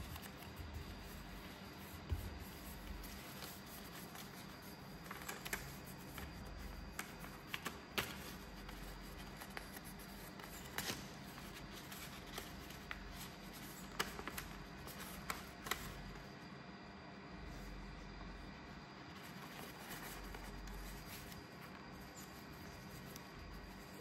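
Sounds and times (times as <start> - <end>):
paper being folded and creased: 0.0 - 16.2, 19.0 - 24.0
steady low hum: 0.0 - 24.0.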